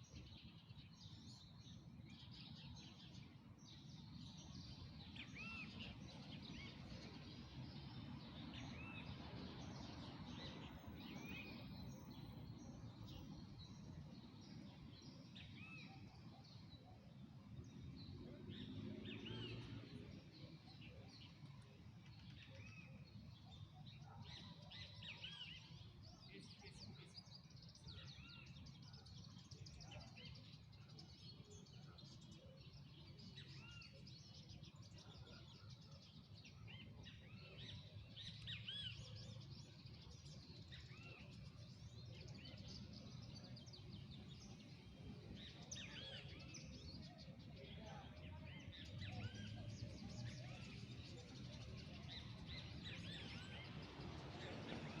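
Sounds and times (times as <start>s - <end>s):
birds chirping: 36.6s - 55.0s.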